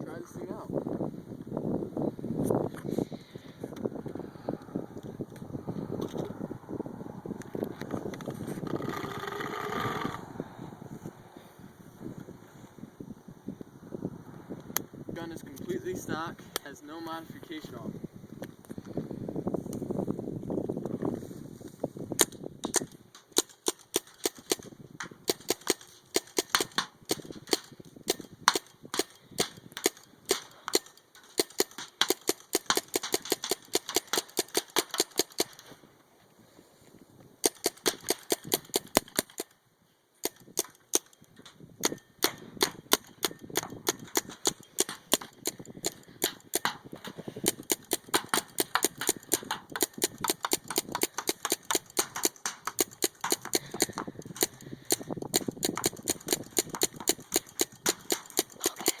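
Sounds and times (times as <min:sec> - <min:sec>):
paintball marker firing pops: 0:22.2 - 0:35.6, 0:37.4 - 0:39.5, 0:40.2 - 0:59.0.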